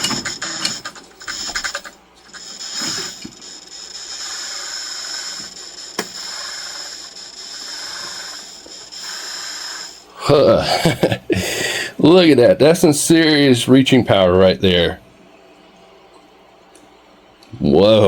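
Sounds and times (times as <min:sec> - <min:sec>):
hydraulic pump whining: 0:00.0 - 0:11.1.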